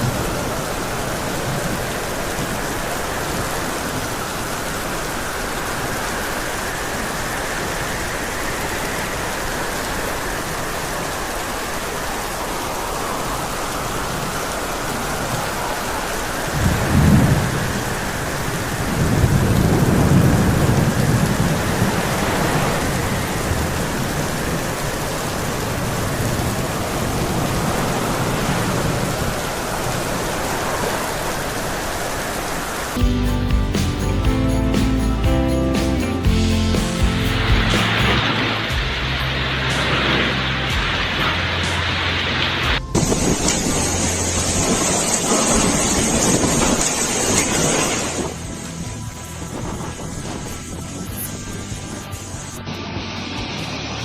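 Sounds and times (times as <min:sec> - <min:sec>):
steady rain: 0:00.0 - 0:54.0
thunder crack and rumble: 0:16.4 - 0:30.3, 0:42.7 - 0:48.4.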